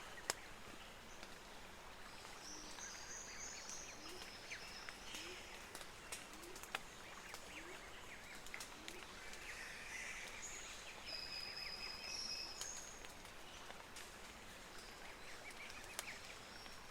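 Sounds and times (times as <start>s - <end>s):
wood fire crackling and popping: 5.0s - 7.4s, 8.3s - 9.4s, 12.6s - 14.9s.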